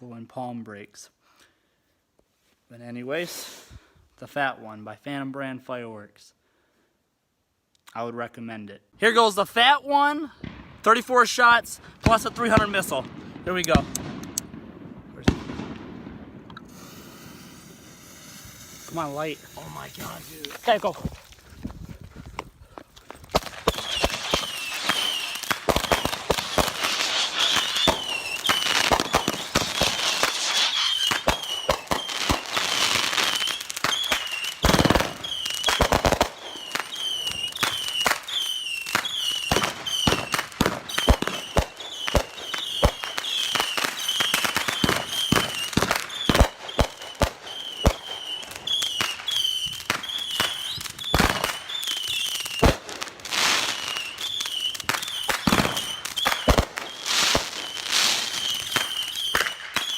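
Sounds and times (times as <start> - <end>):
firework crackling: 10.8 - 59.9
firework shots bursting: 12.0 - 21.4, 23.2 - 59.9.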